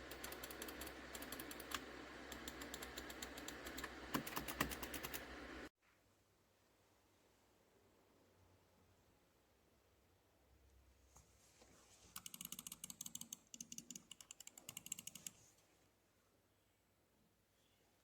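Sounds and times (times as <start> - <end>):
fast typing on keyboard: 0.0 - 5.5, 12.2 - 15.4.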